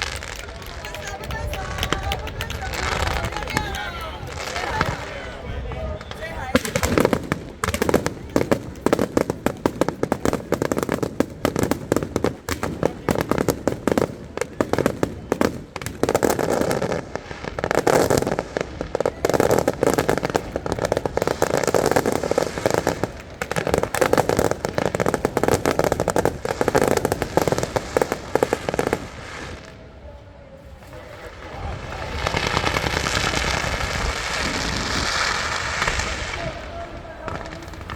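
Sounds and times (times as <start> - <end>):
fireworks bursts and crackles: 0.0 - 37.9.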